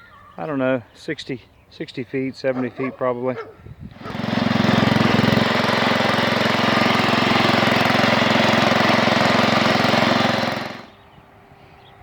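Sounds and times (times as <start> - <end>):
garden tractor engine running: 3.9 - 11.1.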